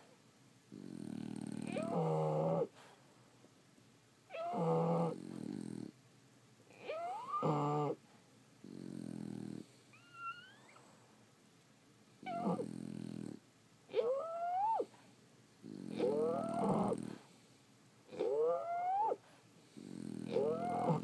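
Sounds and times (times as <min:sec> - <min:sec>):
dogs snoring: 0:00.7 - 0:02.9, 0:04.3 - 0:06.0, 0:06.7 - 0:08.0, 0:08.6 - 0:10.8, 0:12.2 - 0:15.0, 0:15.6 - 0:17.4, 0:18.1 - 0:21.0.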